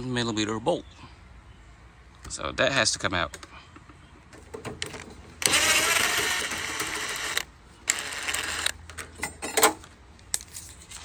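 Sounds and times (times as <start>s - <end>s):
power tool whirring: 4.8s - 8.9s.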